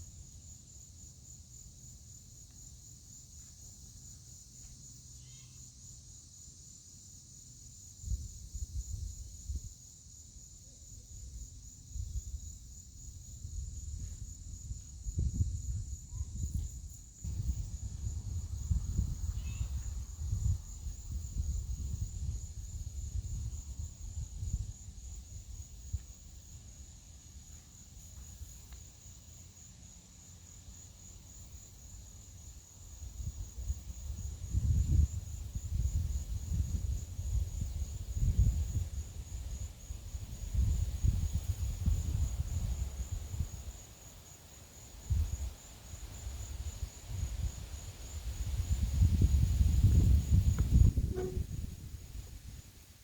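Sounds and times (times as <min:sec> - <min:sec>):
insects chorus: 0:00.0 - 0:53.0
wind buffeting microphone: 0:13.4 - 0:25.8, 0:33.1 - 0:43.6, 0:47.1 - 0:52.8.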